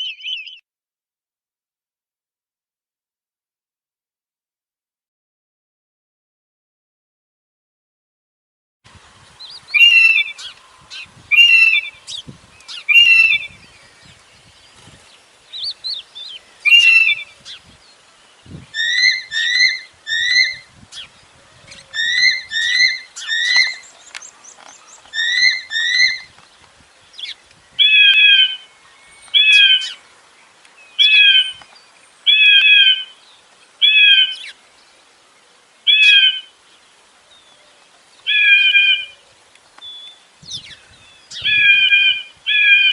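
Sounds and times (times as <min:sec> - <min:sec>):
bird of prey calls: 0:00.0 - 0:00.6, 0:09.4 - 0:14.0, 0:15.5 - 0:17.7, 0:18.7 - 0:23.9, 0:24.9 - 0:26.3, 0:27.2 - 0:30.0, 0:31.0 - 0:31.7, 0:32.3 - 0:33.2, 0:33.8 - 0:34.6, 0:35.9 - 0:36.5, 0:38.3 - 0:39.3, 0:39.9 - 0:42.9.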